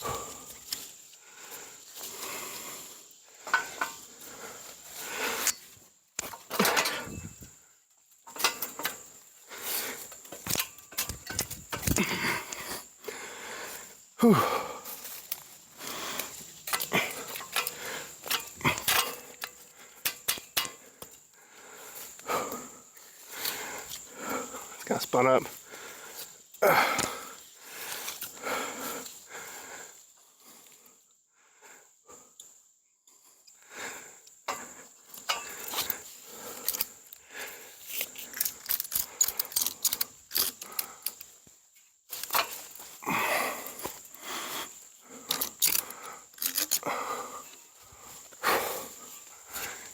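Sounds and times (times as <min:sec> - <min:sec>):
heavy breathing: 0:00.0 - 0:05.7, 0:08.4 - 0:10.3, 0:11.0 - 0:24.8, 0:25.5 - 0:32.4, 0:33.6 - 0:41.3, 0:42.8 - 0:49.9
metal clinks and knocks: 0:03.4 - 0:04.1, 0:05.4 - 0:07.5, 0:08.2 - 0:09.2, 0:10.2 - 0:12.2, 0:16.2 - 0:21.2, 0:34.5 - 0:36.0.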